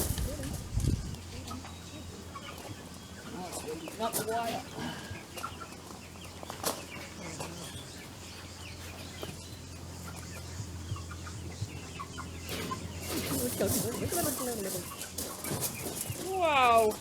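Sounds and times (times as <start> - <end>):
chickens clucking: 0.0 - 17.0
steady low hum: 4.7 - 17.0.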